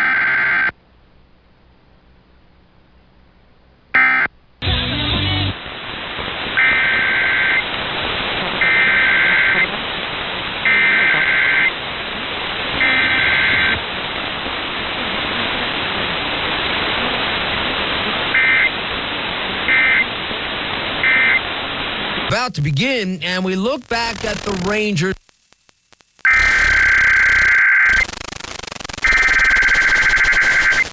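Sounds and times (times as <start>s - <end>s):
radio hiss: 5.5s - 30.9s
buzzy two-tone data bursts: 22.5s - 30.9s.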